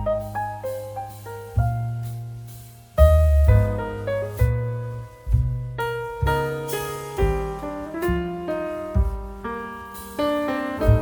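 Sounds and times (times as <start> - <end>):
slow piano music: 0.0 - 11.0.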